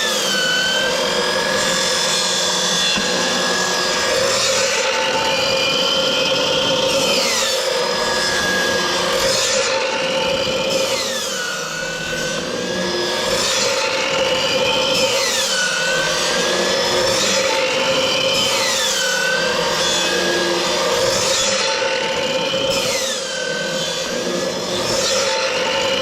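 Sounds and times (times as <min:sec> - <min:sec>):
circular saw cutting wood: 0:00.0 - 0:26.0.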